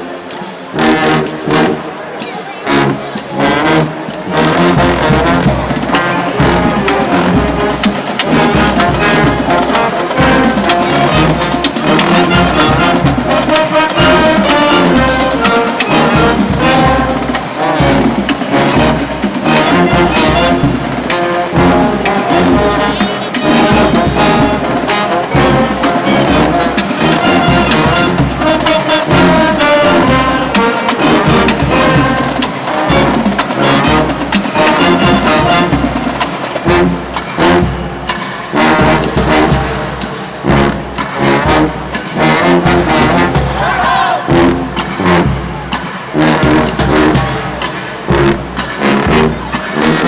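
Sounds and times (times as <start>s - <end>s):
marching band playing brass tune: 0.0s - 50.0s
drum beat: 2.7s - 50.0s.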